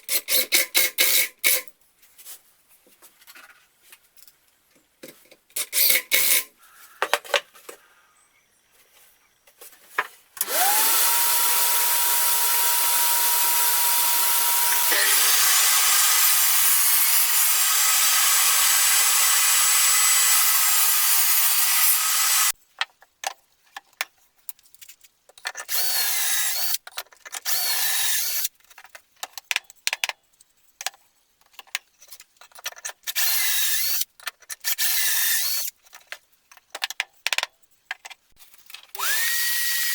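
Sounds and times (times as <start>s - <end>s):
electric power tool whining: 10.4s - 22.6s, 39.0s - 39.9s.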